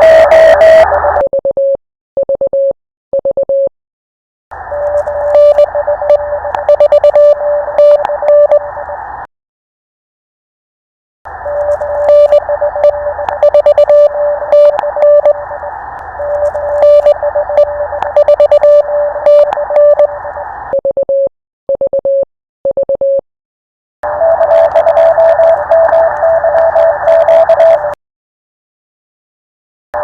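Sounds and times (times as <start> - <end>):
morse code beeps: 0.0 - 3.7, 4.7 - 9.0, 11.4 - 23.2, 24.0 - 28.0
static crackles: 4.5 - 9.3, 11.3 - 20.8, 24.1 - 28.0
radio band noise hiss: 4.6 - 9.3, 11.3 - 20.7, 24.7 - 27.7
clean sidetone keying: 4.7 - 8.7, 11.4 - 20.4.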